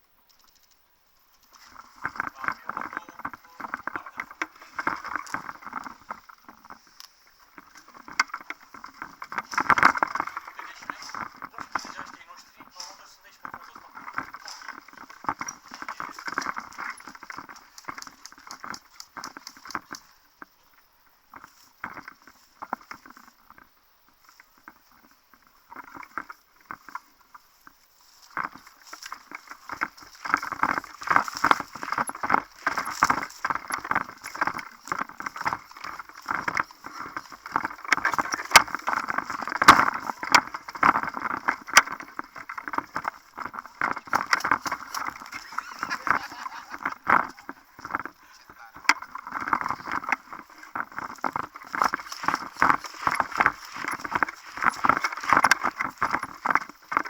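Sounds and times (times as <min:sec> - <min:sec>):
close footsteps: 0:00.0 - 0:57.0
clothing and gear rustling: 0:00.3 - 0:57.0.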